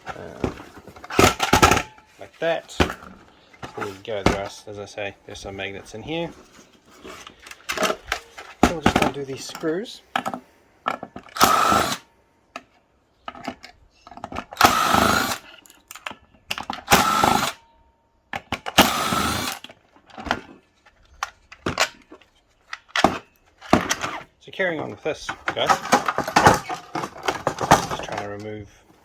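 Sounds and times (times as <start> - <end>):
handling clicks and knocks: 0.0 - 4.7, 5.3 - 11.4, 12.5 - 14.7, 19.6 - 29.0
cordless drill spinning: 11.4 - 12.0, 14.6 - 15.6, 16.9 - 17.6, 18.7 - 19.7.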